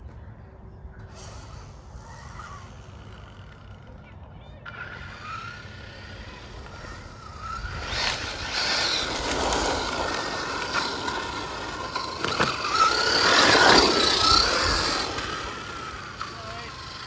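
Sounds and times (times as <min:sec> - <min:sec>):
rc car electric motor whining: 0:01.0 - 0:17.0
tyres on the ground: 0:01.0 - 0:17.0.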